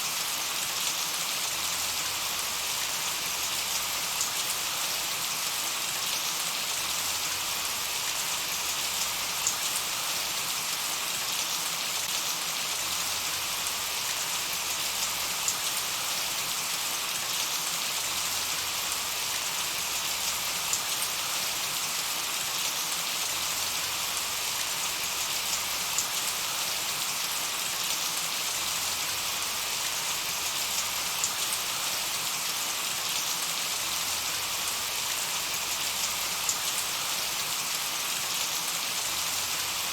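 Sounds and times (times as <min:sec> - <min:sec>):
rain falling: 0:13.3 - 0:39.9.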